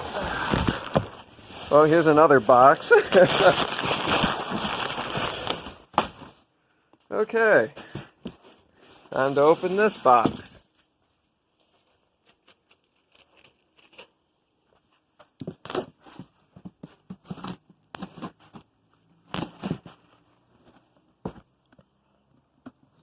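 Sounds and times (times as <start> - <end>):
cardboard packaging tearing and crinkling: 0.0 - 6.2.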